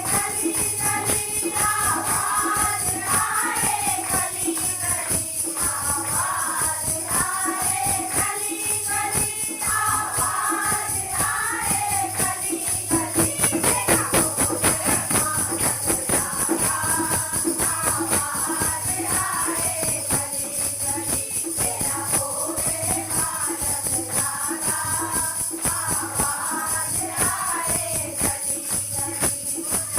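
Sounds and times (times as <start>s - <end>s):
group singing devotional song: 0.0s - 29.9s
jingling hand percussion: 0.0s - 29.9s.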